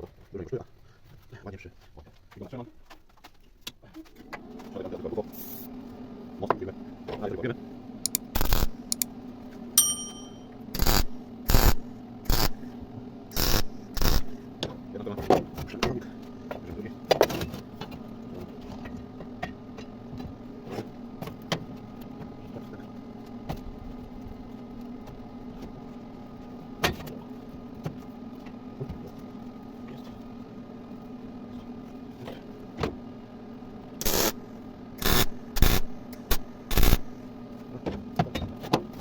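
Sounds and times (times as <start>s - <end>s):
steady electrical hum: 4.9s - 15.0s, 27.5s - 37.7s
short loud bursts of noise: 35.0s - 37.1s.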